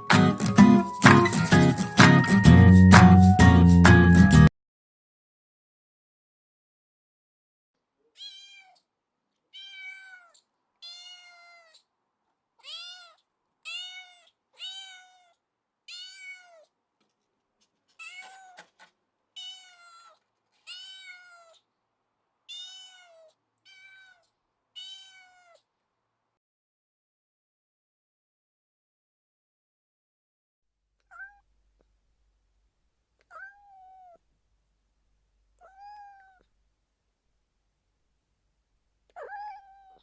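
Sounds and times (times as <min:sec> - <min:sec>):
cat meowing: 0:08.1 - 0:08.9, 0:09.5 - 0:11.9, 0:12.6 - 0:16.7, 0:18.0 - 0:18.7, 0:19.4 - 0:21.6, 0:22.5 - 0:25.7, 0:31.1 - 0:31.5, 0:33.3 - 0:34.2, 0:35.6 - 0:36.4, 0:39.1 - 0:40.0.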